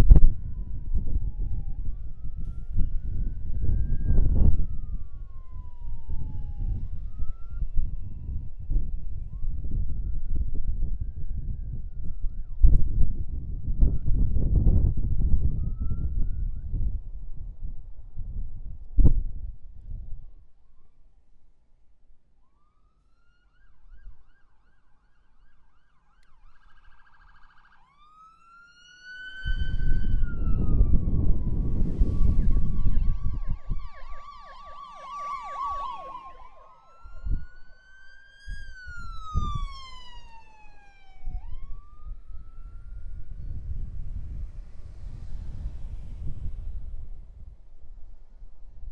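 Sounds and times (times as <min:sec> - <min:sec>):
emergency vehicle siren: 0:00.0 - 0:18.4, 0:22.4 - 0:48.4
rushing road noise: 0:28.0 - 0:41.3, 0:42.6 - 0:48.9.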